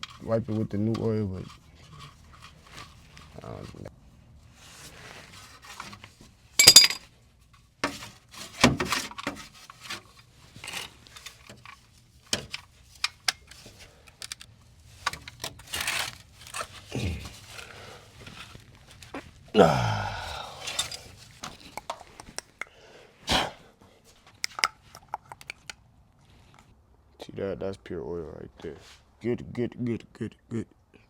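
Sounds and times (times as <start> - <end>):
scraping and handling noise: 0.0 - 19.5, 20.2 - 22.6
metal tools clinking and knocking: 6.6 - 7.1, 20.4 - 22.0.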